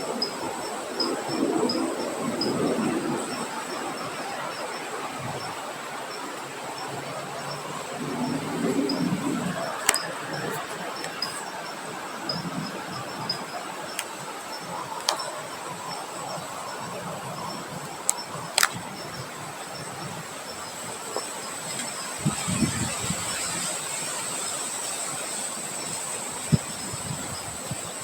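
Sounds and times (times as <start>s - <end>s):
wind buffeting microphone: 0.0s - 28.0s
wind rushing: 7.9s - 11.6s
sharp clicks: 9.8s - 11.4s, 18.1s - 18.8s.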